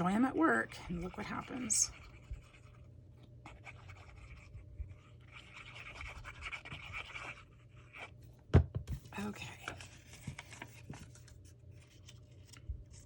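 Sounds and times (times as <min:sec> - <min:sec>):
low steady hum: 0:00.0 - 0:13.0
paper scratching and rustling: 0:03.5 - 0:08.2, 0:09.2 - 0:13.0.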